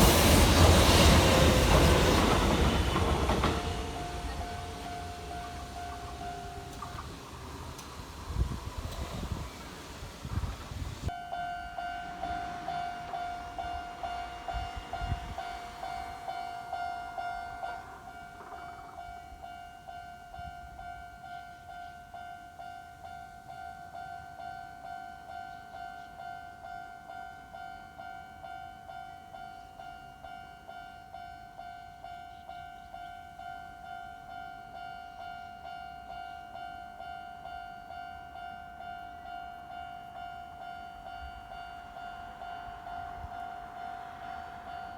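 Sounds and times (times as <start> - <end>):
train wheels over crossing: 0.0 - 21.2, 30.0 - 44.9.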